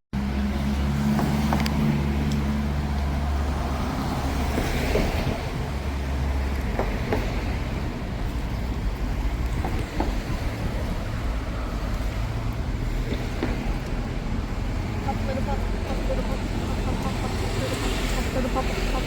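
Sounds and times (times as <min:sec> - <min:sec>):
road traffic noise: 0:00.1 - 0:19.0.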